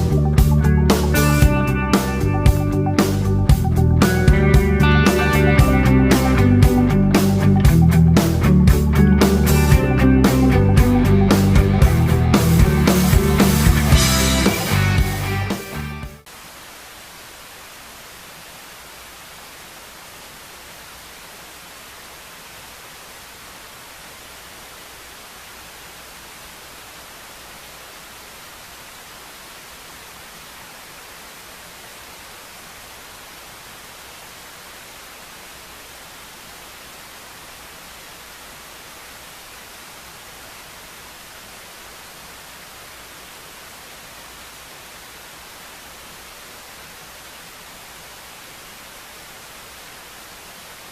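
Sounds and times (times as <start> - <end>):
rock music: 0.0 - 16.2
steady hiss: 0.0 - 50.9.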